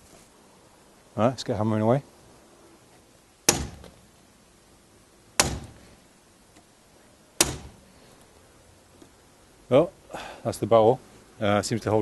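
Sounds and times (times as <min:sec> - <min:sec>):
hammer striking metal lock: 0:03.5 - 0:04.0, 0:05.4 - 0:05.8, 0:07.4 - 0:07.8.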